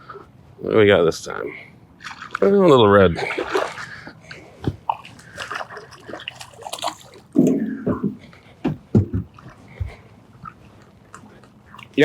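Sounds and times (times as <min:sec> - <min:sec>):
water splashing and sloshing: 0:01.9 - 0:12.0
sharp knocks: 0:07.4 - 0:10.0.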